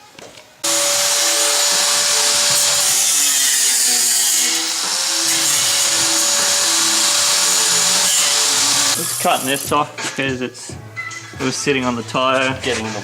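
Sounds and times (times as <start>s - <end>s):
power grinder cutting metal: 0.6s - 9.7s.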